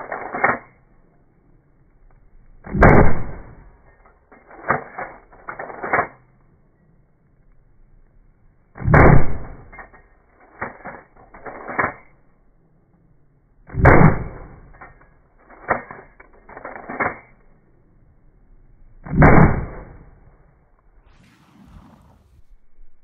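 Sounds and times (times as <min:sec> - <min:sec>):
shotgun shots: 0:02.6 - 0:03.7, 0:08.8 - 0:09.7, 0:13.7 - 0:14.8, 0:19.0 - 0:20.2.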